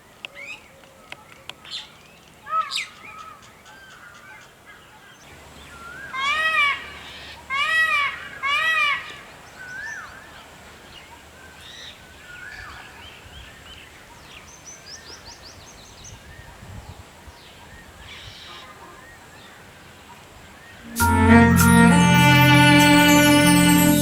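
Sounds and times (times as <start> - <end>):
loud music: 20.9 - 24.0.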